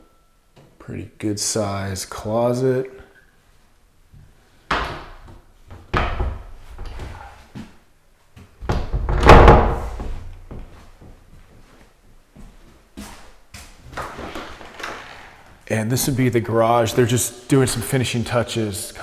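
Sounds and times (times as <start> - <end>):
door thuds and knocks: 5.8 - 6.5, 8.6 - 10.2.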